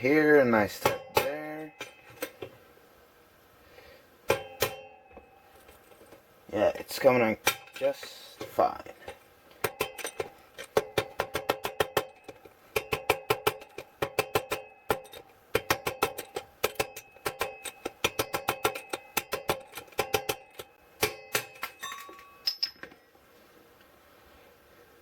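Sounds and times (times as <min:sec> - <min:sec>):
hammer tapping metal rod: 0:09.6 - 0:22.8.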